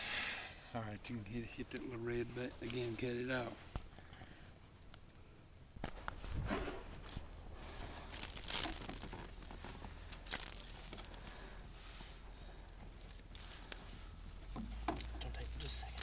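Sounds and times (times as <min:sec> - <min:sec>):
microphone handling noise: 0:05.8 - 0:08.0.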